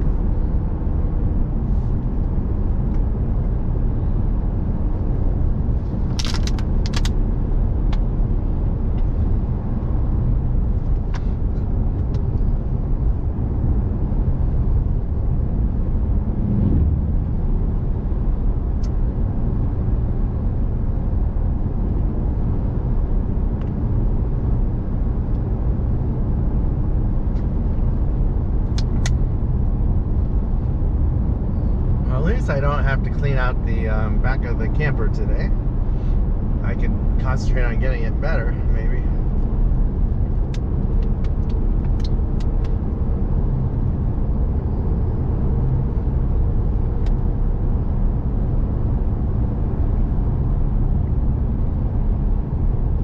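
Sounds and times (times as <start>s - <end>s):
truck engine and tyre rumble: 0.0s - 53.0s
sharp clicks or rattles: 6.1s - 7.2s.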